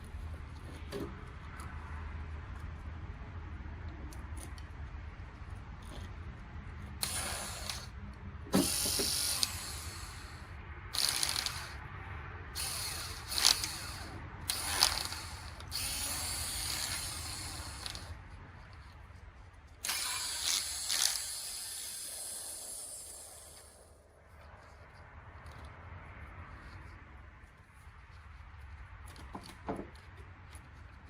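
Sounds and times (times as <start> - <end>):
ratchet wrench clicking: 7.0 - 7.9, 8.6 - 11.8, 12.6 - 18.2, 19.8 - 23.9.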